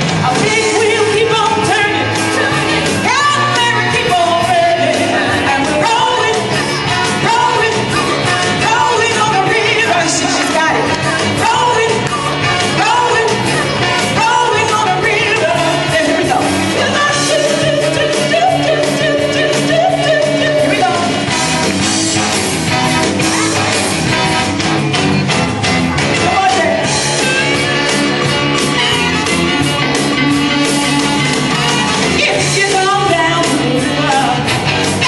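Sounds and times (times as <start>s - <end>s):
person singing: 0.0s - 21.6s, 31.4s - 35.0s
driving drum beat: 0.0s - 35.0s
live rock and roll band: 0.0s - 35.0s.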